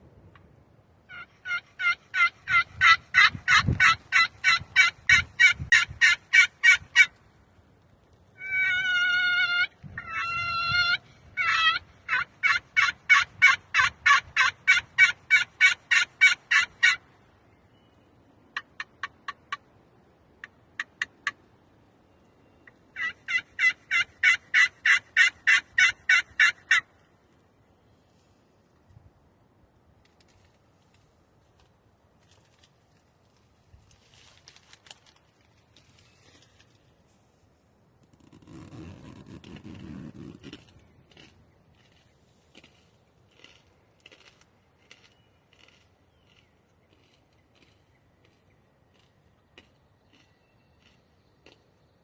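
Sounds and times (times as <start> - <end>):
turkey yelping: 1.1 - 7.1, 8.4 - 17.0, 22.7 - 26.9
turkey drawn-out calls: 1.1 - 7.2, 8.3 - 17.0, 18.5 - 19.7, 20.4 - 21.6, 22.6 - 27.0.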